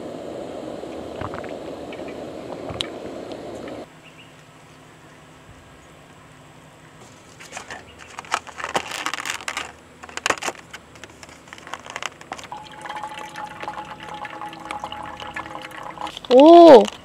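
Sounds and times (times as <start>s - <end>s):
camp cooking gear rustling: 7.0s - 12.6s
water being poured: 11.5s - 16.9s
faint steady tone: 12.4s - 16.7s.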